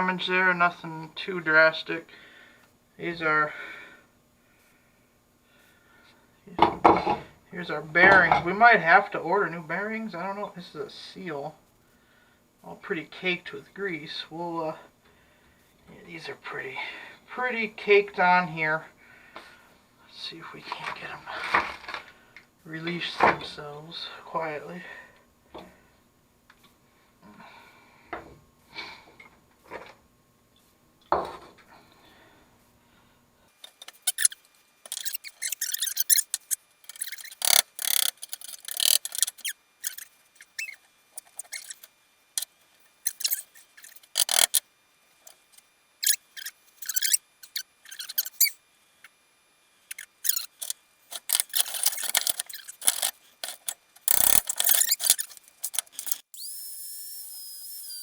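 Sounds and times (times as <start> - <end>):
high-pitched metal scraping: 33.7 - 44.6, 45.3 - 48.6, 49.9 - 58.0.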